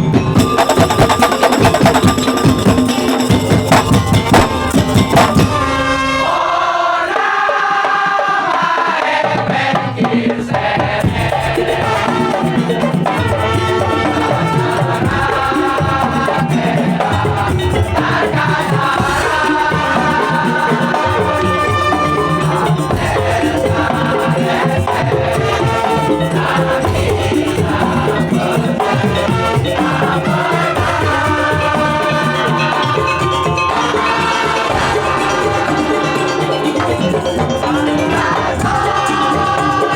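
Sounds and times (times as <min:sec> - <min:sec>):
dense drumming: 0:00.0 - 0:06.4, 0:10.9 - 0:39.8
rattling percussion: 0:00.0 - 0:09.6, 0:10.2 - 0:39.9
repeating melodic line: 0:00.4 - 0:06.3.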